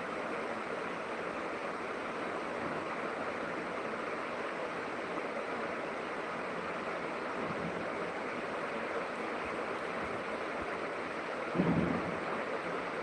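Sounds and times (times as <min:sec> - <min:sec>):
rushing water: 0:00.0 - 0:13.0.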